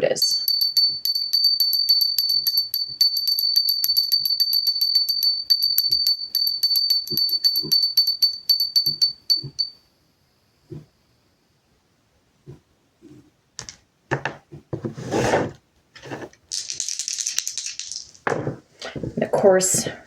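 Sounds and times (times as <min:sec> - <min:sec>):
hand bell ringing rapidly: 0:00.3 - 0:09.7.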